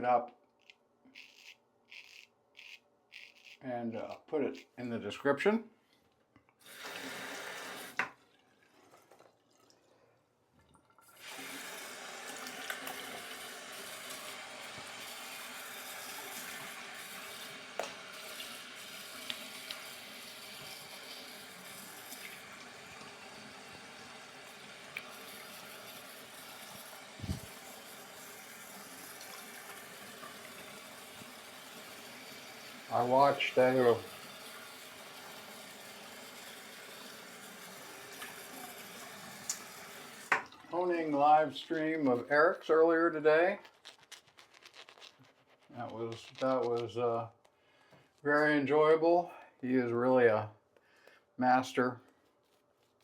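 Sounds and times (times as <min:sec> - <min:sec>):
tap water running into sink: 0:06.6 - 0:08.2, 0:10.6 - 0:42.2.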